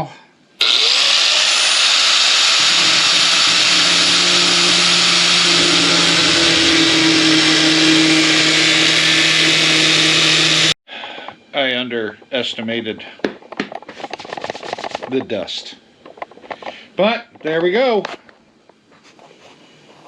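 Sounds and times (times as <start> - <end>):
power tool cutting: 0.6 - 10.8.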